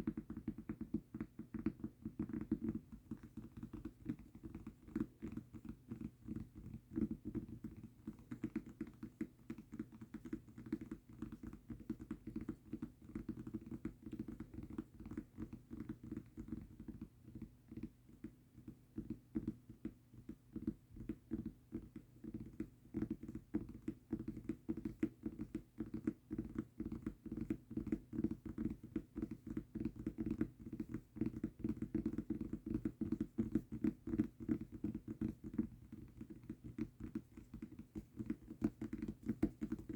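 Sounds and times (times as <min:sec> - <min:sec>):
rapid tapping on a mousepad: 0:00.0 - 0:39.9.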